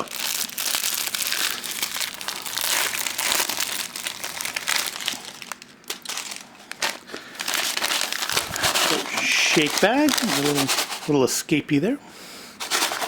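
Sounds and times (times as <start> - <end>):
plastic bag crinkling: 0.0 - 11.1, 12.6 - 13.0.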